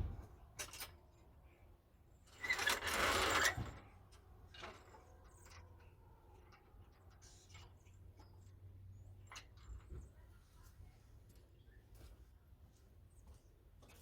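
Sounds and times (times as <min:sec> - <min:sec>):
rapid mechanical rattling: 0:02.2 - 0:08.4.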